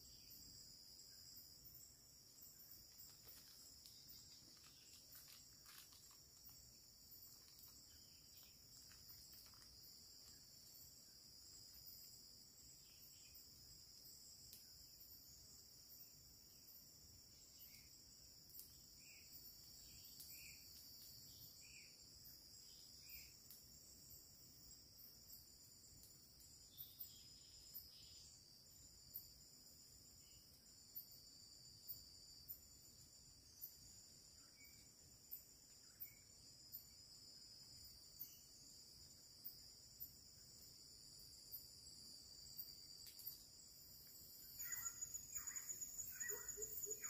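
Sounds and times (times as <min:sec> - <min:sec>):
short insect chirps: 0:00.0 - 0:15.2, 0:30.0 - 0:47.0
insect chorus: 0:00.0 - 0:47.0.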